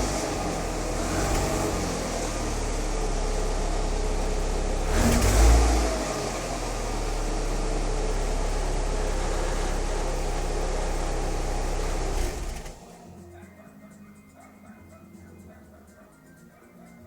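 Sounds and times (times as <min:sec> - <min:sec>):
car engine low drone: 0:00.0 - 0:13.4.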